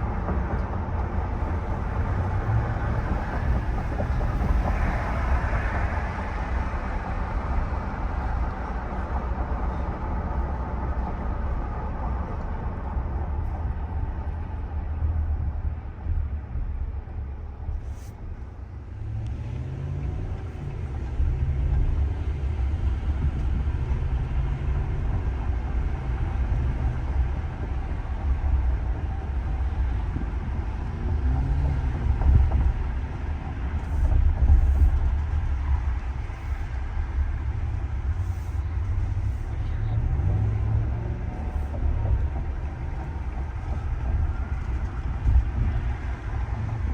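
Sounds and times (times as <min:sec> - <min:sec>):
road and tyre noise: 0:00.0 - 0:46.9
engine revving and shifting: 0:18.9 - 0:27.4, 0:30.8 - 0:33.1, 0:38.7 - 0:46.9.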